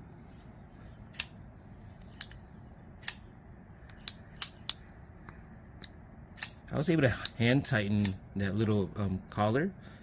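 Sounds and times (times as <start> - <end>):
folding knife metallic clicks: 3.9 - 4.8.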